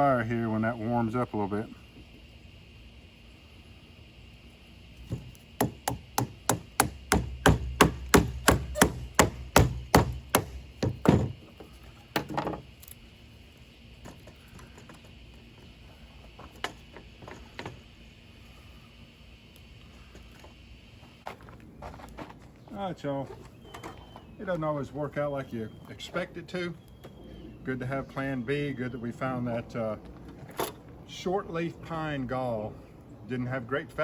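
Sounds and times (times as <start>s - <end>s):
sharp wooden knocks: 5.1s - 11.4s.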